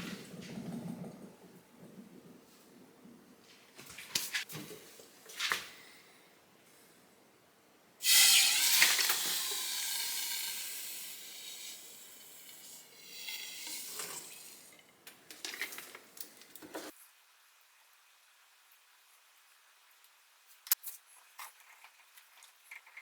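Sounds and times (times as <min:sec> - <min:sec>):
hot pipe joint sizzling: 0:08.0 - 0:14.9.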